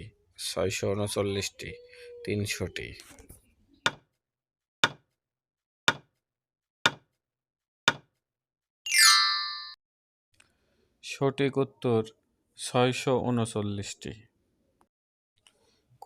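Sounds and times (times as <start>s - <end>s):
chime with downward sweep: 8.9s - 9.8s.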